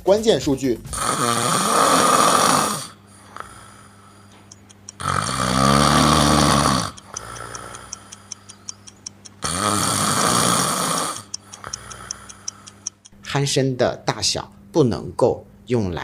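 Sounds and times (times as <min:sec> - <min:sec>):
man snoring heavily: 0:00.9 - 0:04.3, 0:05.0 - 0:08.1, 0:09.4 - 0:12.9
clock ticking quickly: 0:04.5 - 0:05.1, 0:06.2 - 0:09.5, 0:11.2 - 0:13.2.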